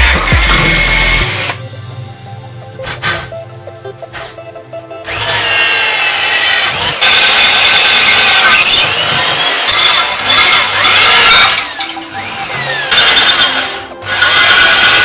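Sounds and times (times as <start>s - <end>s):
power tool cutting: 0.0s - 1.6s, 5.0s - 15.0s.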